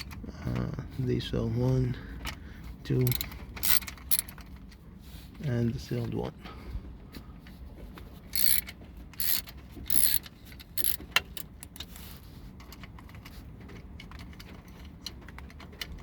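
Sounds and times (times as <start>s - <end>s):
quiet tool handling: 1.6s - 4.8s
ratchet wrench ratcheting: 3.0s - 4.4s, 8.3s - 11.8s.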